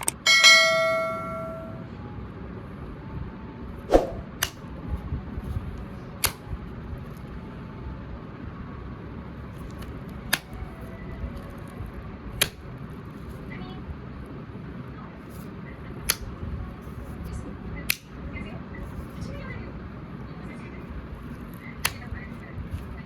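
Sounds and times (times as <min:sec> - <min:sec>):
ringing chime: 0:00.2 - 0:02.0
sharp clicks: 0:06.2 - 0:06.4.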